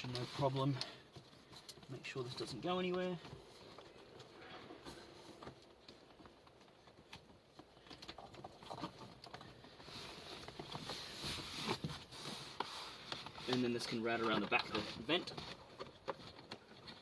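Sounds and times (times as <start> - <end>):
cables rustling: 0.0 - 17.0.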